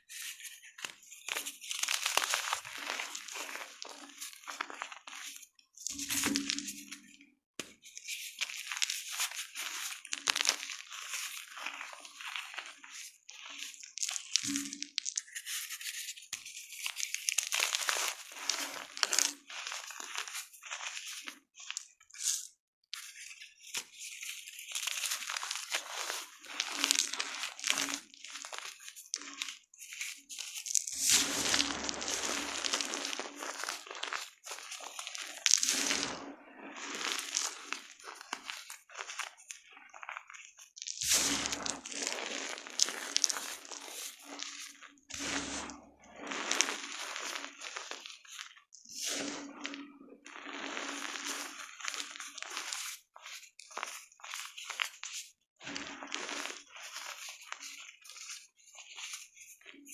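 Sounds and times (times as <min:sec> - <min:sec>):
chalk crunching: 0:00.2 - 0:06.8, 0:08.3 - 0:59.9.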